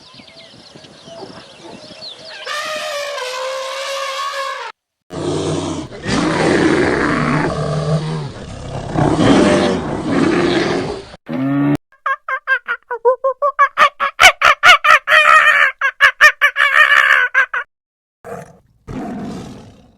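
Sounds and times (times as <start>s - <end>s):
bird chirps: 0.0s - 2.6s
large animal roaring and growling: 5.1s - 11.7s, 18.3s - 19.9s.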